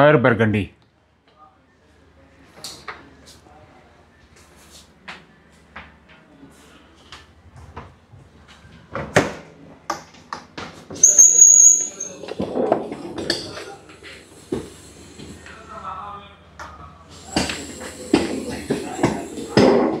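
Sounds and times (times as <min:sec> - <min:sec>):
brief high squeal: 0:11.0 - 0:12.4.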